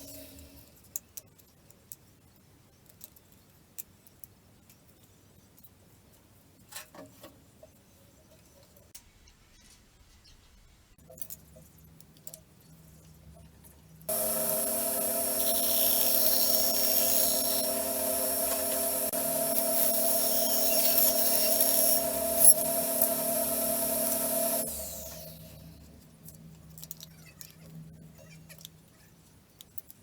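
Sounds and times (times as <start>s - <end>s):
woodworking power tool running: 14.1s - 25.6s.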